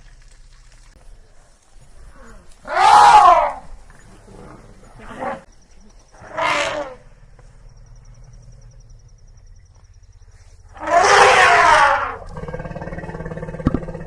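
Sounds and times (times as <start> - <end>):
elephant trumpeting: 2.6 - 3.6, 6.2 - 7.0, 10.7 - 13.6
low background rumble: 6.9 - 10.8.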